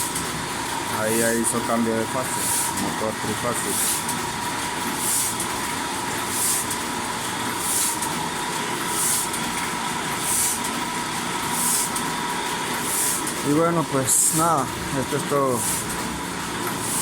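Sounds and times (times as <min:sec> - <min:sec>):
printing press motor whine: 0:00.0 - 0:17.0
hissing swish of press: 0:10.2 - 0:10.7, 0:11.6 - 0:12.0, 0:12.8 - 0:13.3.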